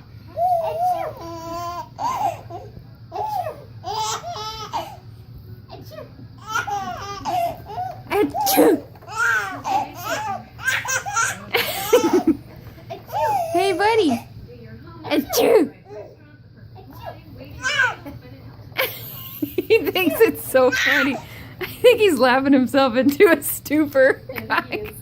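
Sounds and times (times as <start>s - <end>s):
baby laughing: 0.3s - 5.0s, 5.8s - 14.2s, 18.8s - 21.4s.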